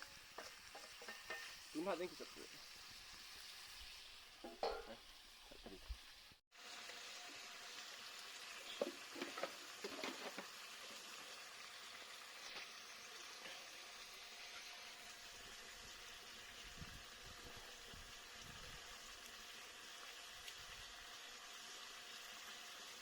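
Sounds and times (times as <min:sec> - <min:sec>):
spoon scraping a pan: 0:00.0 - 0:01.7, 0:04.4 - 0:06.0, 0:08.6 - 0:11.0, 0:12.4 - 0:13.8
food sizzling in a pan: 0:00.0 - 0:23.0.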